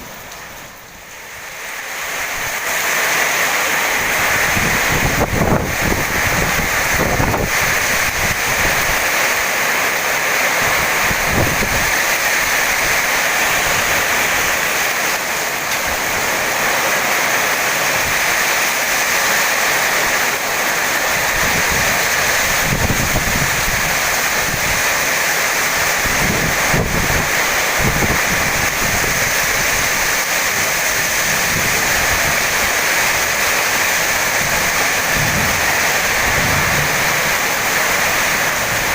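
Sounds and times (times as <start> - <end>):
heavy rain pouring: 0.0 - 38.9
wind buffeting microphone: 4.0 - 9.0, 10.7 - 14.5, 21.2 - 24.9, 25.7 - 30.1, 30.8 - 38.9.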